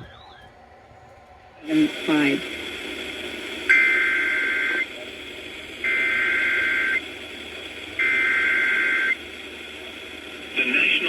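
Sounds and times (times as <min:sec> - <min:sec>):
radio hiss: 0:01.6 - 0:11.0.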